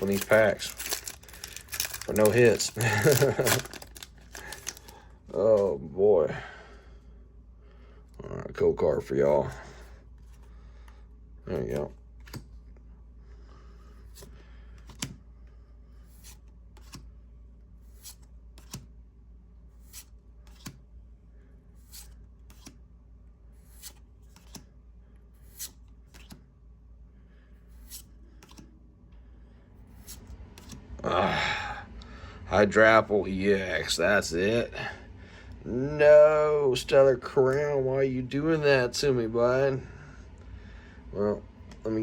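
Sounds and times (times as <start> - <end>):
voice: 0.0 - 0.8, 2.1 - 3.7, 5.3 - 6.5, 8.2 - 9.6, 32.5 - 35.0, 35.7 - 39.9, 41.2 - 42.0
trading cards flipping clicks: 18.6 - 18.9, 20.5 - 20.8, 23.7 - 24.7, 25.5 - 26.4, 27.8 - 28.7.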